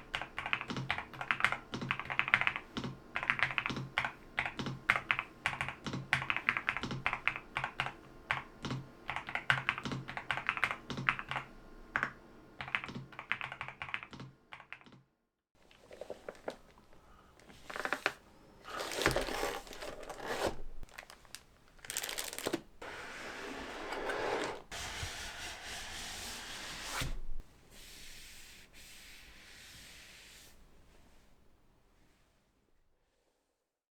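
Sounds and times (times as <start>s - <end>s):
rapid typing on keyboard: 0.0s - 15.0s
rustling sliding and scraping: 15.6s - 31.4s.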